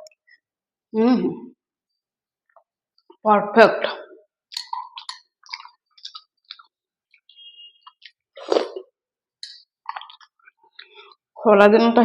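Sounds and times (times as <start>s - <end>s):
lip smacks and slurps: 4.5s - 8.8s, 9.4s - 11.2s.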